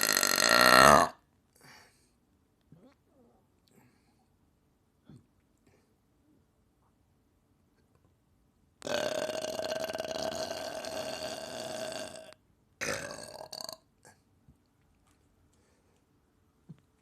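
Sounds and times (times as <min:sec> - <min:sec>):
person belching: 0:00.0 - 0:01.2, 0:08.8 - 0:13.8.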